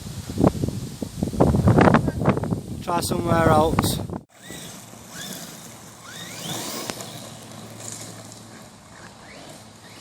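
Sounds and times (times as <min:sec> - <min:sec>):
toy truck electric motor whining: 0:04.3 - 0:10.0.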